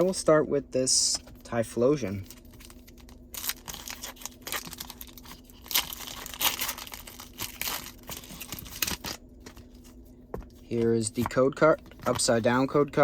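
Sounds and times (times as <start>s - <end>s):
foil wrapper crinkling and tearing: 2.1s - 9.8s.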